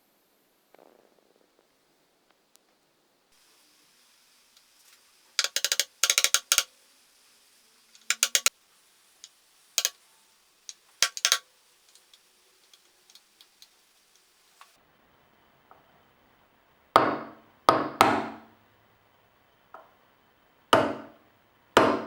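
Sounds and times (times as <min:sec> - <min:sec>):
small metal parts clicking: 0:04.6 - 0:06.7, 0:07.8 - 0:08.5, 0:09.2 - 0:14.8.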